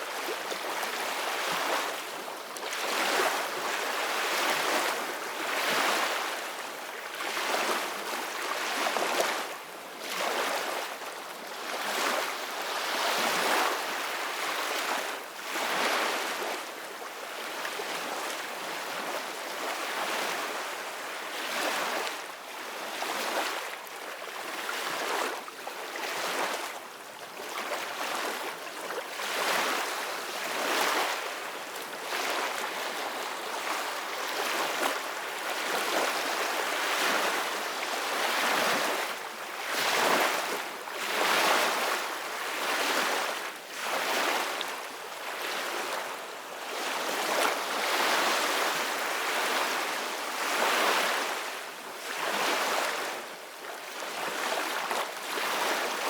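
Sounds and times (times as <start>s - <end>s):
ocean waves breaking on beach: 27.4s - 56.0s.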